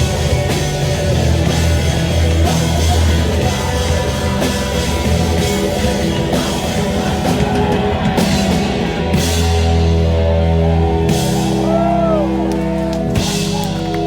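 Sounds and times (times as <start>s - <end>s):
live rock band playing: 0.0s - 14.0s.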